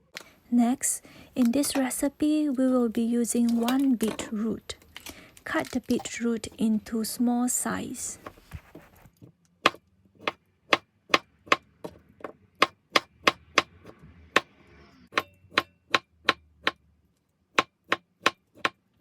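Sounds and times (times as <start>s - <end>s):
knife chopping on cutting board: 9.6s - 14.0s, 17.5s - 18.8s.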